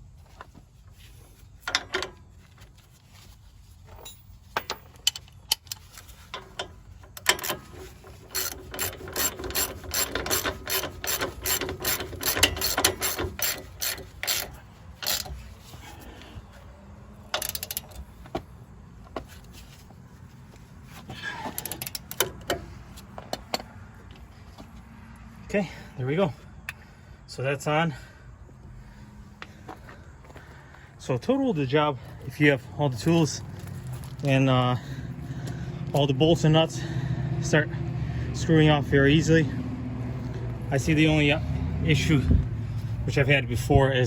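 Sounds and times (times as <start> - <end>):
ratchet wrench clicking: 6.4 - 15.4, 17.3 - 18.0, 21.6 - 22.6.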